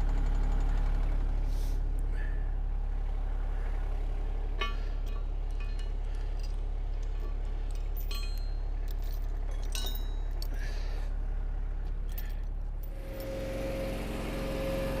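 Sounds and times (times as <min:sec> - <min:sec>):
light metal clinks: 0:04.6 - 0:10.7, 0:12.0 - 0:13.4
gas engine running: 0:12.8 - 0:15.0
hydraulic whine: 0:12.9 - 0:15.0.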